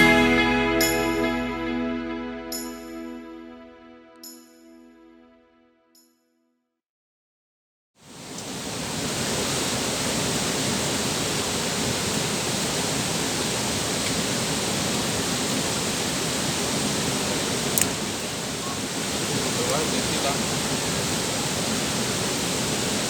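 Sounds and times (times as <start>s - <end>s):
waterfall rushing: 8.0s - 23.0s.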